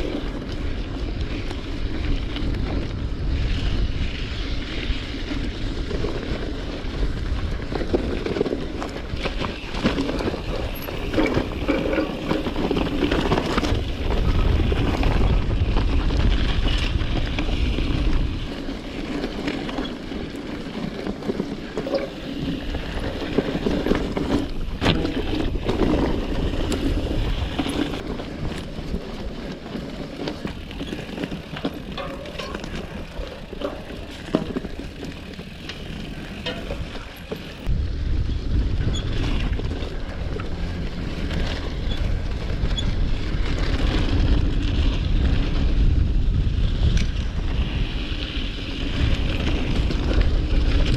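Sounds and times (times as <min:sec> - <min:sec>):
bike tyres on gravel: 0:00.0 - 0:50.9
wind buffeting microphone: 0:00.0 - 0:50.9
small clicks and rattles: 0:30.1 - 0:37.7.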